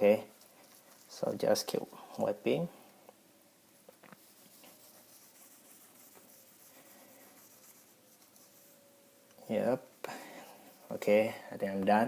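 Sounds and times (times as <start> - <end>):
cloth rubbing a phone: 0.1 - 1.9, 4.0 - 8.8.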